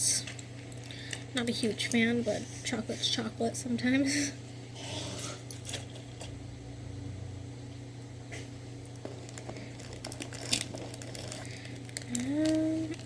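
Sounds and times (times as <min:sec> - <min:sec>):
steady low hum: 0:00.0 - 0:13.0
plastic packaging crinkling: 0:08.9 - 0:13.0.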